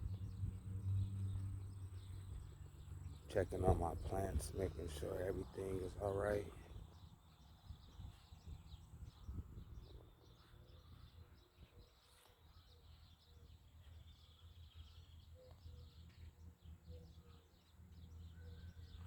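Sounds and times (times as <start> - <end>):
low wind rumble: 0.0 - 10.2
faint bird chirps: 0.0 - 19.0.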